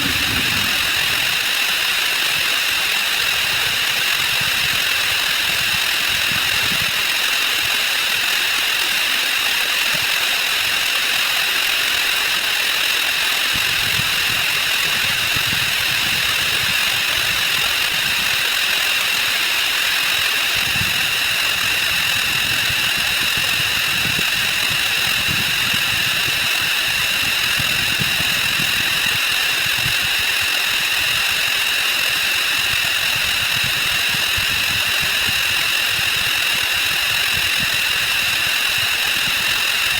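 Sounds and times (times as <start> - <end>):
faint flickering low rumble: 0.0 - 1.6
harsh buzzing hiss: 0.0 - 1.6.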